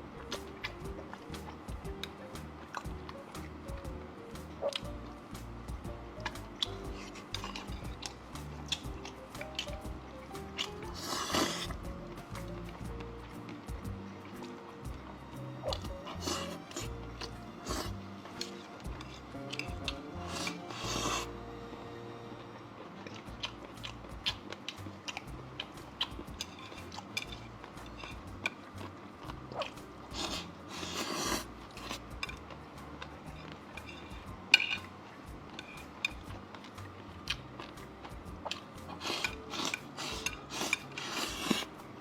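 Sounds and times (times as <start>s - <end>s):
quiet background music: 0.0s - 42.0s
chewing and biting: 6.2s - 14.6s, 15.7s - 21.4s, 23.0s - 34.9s, 35.5s - 42.0s.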